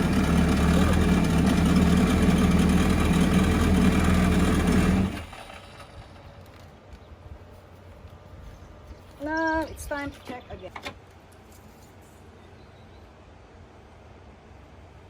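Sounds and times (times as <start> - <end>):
jet ski engine idling: 0.0 - 6.6.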